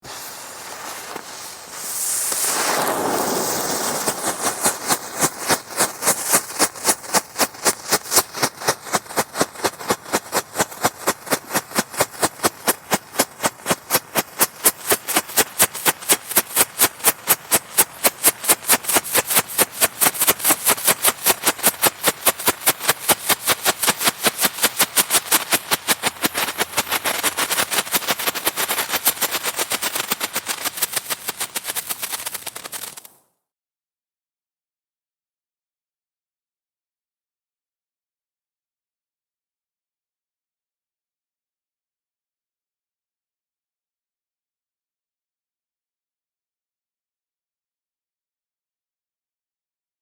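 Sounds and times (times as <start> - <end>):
firework hissing: 0.0 - 33.1
firework crackling pops: 0.0 - 33.2.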